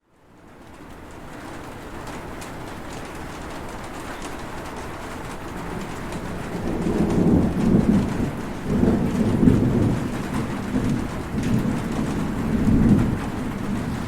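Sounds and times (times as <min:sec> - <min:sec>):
heavy rain falling: 0:00.1 - 0:14.0
rolling thunder: 0:05.2 - 0:14.0.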